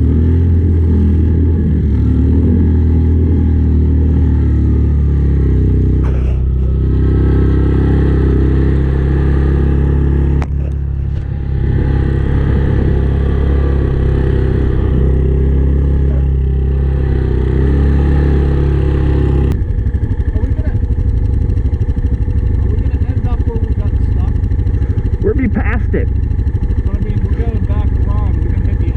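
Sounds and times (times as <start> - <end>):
atv engine running: 0.0 - 28.9.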